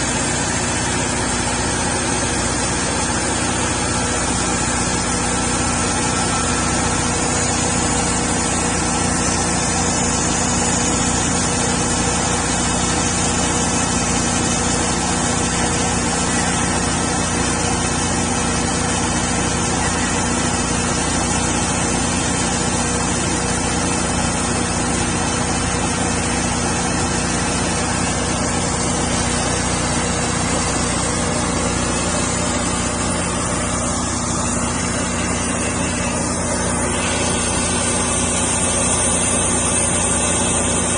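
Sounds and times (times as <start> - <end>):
saw blade cutting log: 0.0 - 40.9
small engine running: 0.0 - 40.9.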